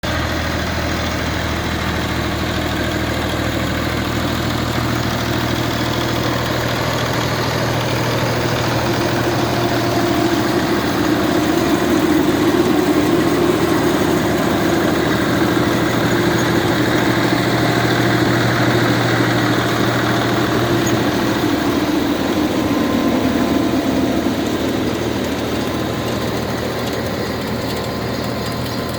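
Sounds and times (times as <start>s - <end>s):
tractor diesel engine running: 0.0s - 28.9s
machine noise: 2.2s - 28.9s.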